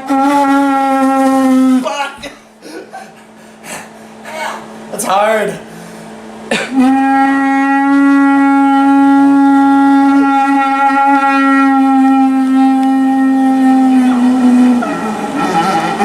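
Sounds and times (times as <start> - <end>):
lips buzzing into a tube: 0.0 - 2.9, 6.5 - 16.0.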